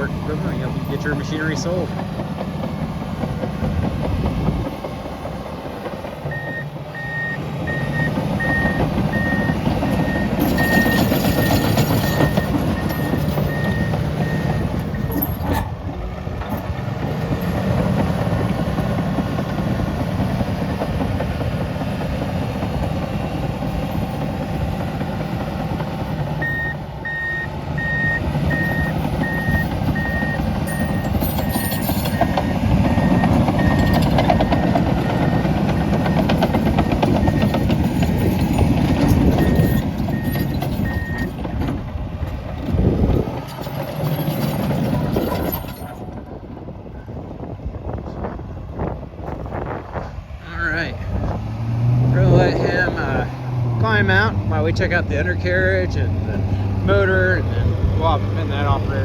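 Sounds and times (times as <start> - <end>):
bulldozer diesel engine working: 0.0 - 59.0
reverse alarm beeping: 6.3 - 15.3, 26.4 - 31.2, 32.1 - 37.7, 39.4 - 41.3.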